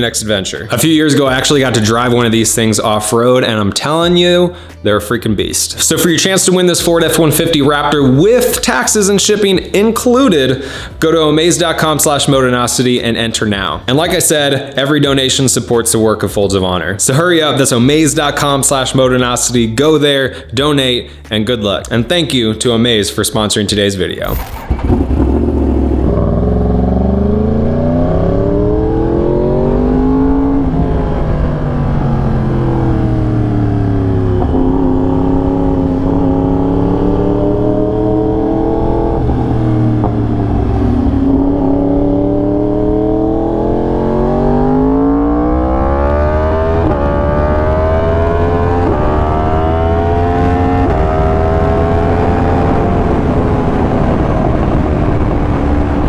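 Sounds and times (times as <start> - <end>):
motorcycle engine revving: 24.3 - 56.0.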